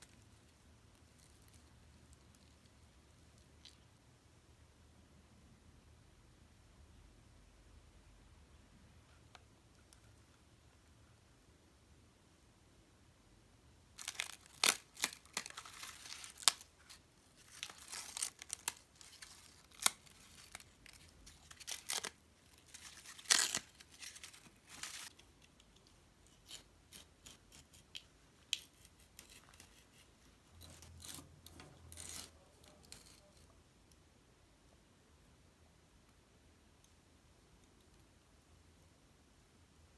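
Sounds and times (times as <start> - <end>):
paper crinkling: 14.0 - 25.2
paper tearing: 17.4 - 25.1.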